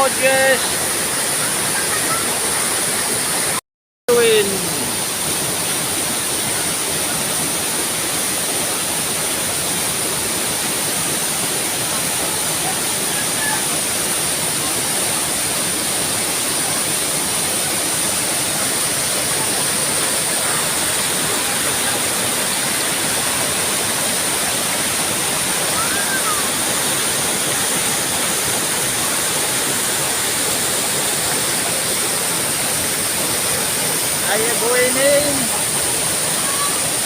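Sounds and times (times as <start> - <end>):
waterfall rushing: 0.0 - 37.0.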